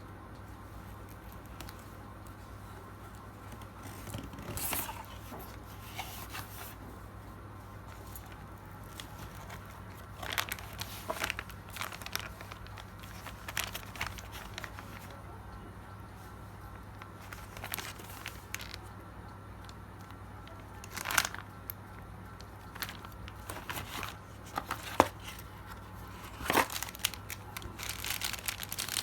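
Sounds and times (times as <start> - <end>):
steady low hum: 0.0 - 29.0
packaging rustles and clicks: 3.4 - 6.8, 7.8 - 15.2, 16.9 - 18.9, 19.6 - 21.8, 22.4 - 29.0.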